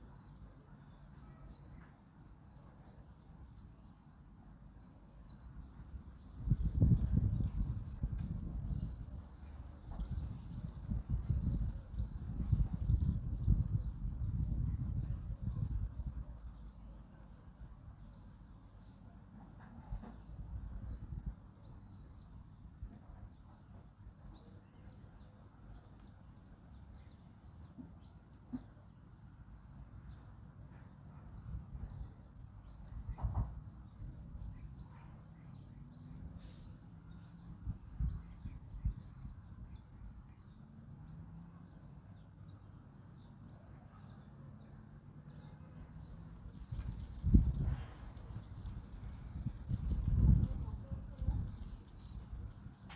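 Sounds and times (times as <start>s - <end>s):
small birds chirping: 0.0s - 52.9s
wind rumble: 6.3s - 16.4s, 46.3s - 52.9s.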